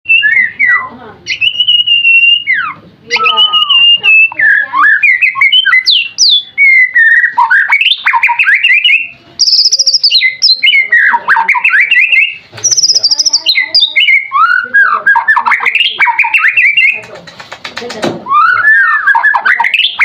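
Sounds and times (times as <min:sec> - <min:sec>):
bird singing whistles and trills: 0:00.1 - 0:17.0, 0:18.2 - 0:20.0.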